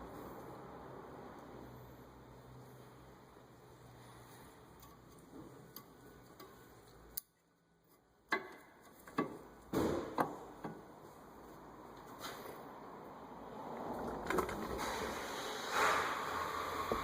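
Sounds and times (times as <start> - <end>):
metallic clicks of brake parts: 4.7 - 9.4
clattering scrape: 14.1 - 17.0.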